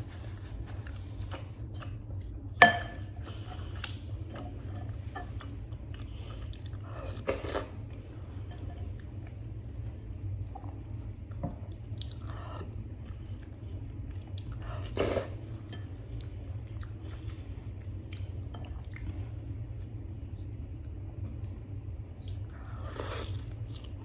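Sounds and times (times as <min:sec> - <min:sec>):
low steady hum: 0:00.0 - 0:24.0
chewing food: 0:08.9 - 0:12.4, 0:16.1 - 0:24.0.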